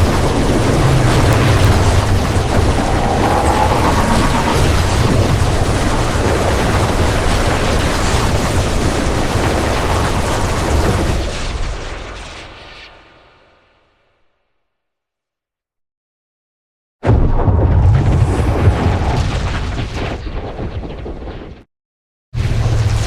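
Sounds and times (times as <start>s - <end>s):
rumbling blast: 0.0s - 6.1s.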